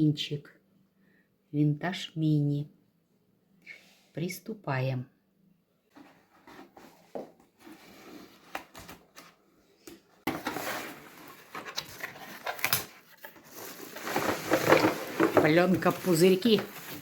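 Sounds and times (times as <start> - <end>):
packing material rustling: 10.3 - 17.0.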